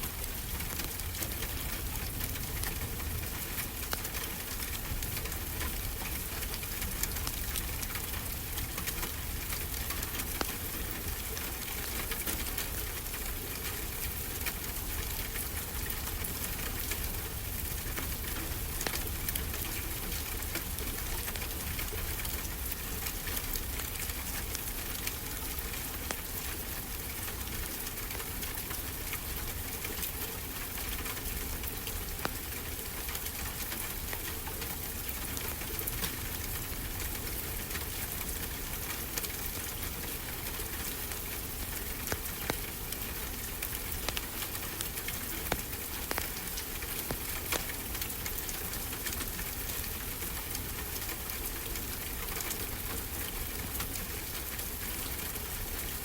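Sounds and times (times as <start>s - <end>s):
wood fire crackling: 30.6s - 52.1s.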